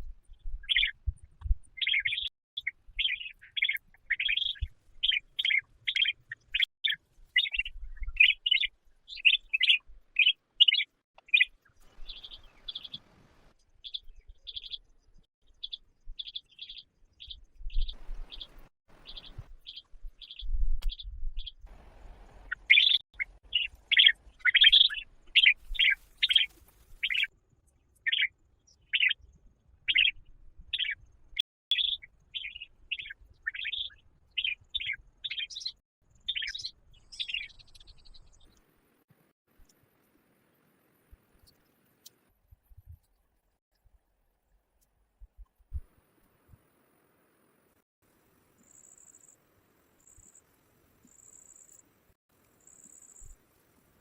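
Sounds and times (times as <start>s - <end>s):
bird chirping: 0.0s - 27.3s, 27.9s - 38.6s, 48.6s - 49.4s, 50.0s - 50.4s, 51.0s - 51.8s, 52.6s - 53.4s.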